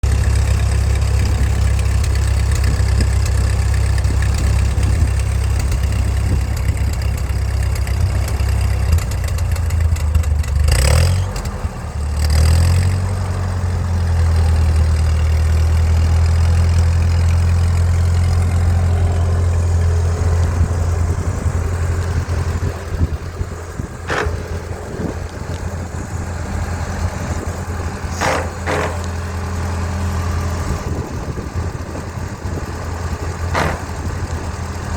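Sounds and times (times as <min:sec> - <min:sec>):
tractor engine running: 0:00.0 - 0:34.9
sharp clicks: 0:28.2 - 0:29.3, 0:33.5 - 0:34.6.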